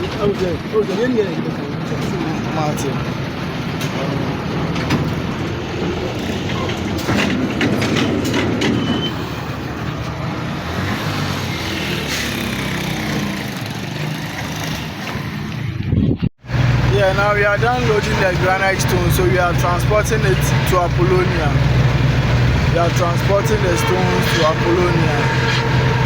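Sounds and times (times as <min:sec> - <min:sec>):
knocks and clatter: 0:00.0 - 0:09.1
vehicle engine running: 0:16.4 - 0:26.0.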